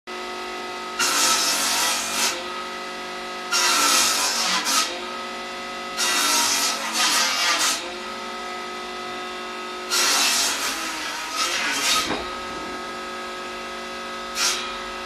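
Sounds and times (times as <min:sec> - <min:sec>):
saw cutting into wood: 0:01.0 - 0:02.5, 0:03.5 - 0:05.0, 0:06.0 - 0:07.9, 0:09.9 - 0:15.0
circular saw running: 0:03.6 - 0:15.0.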